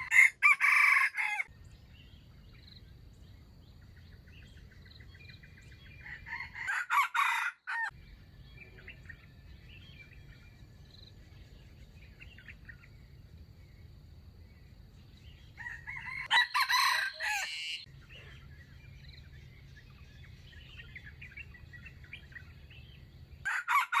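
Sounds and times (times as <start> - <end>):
rooster crowing: 0.0 - 1.5, 6.0 - 7.9, 15.6 - 17.9, 23.5 - 24.0
chirping: 14.6 - 23.5.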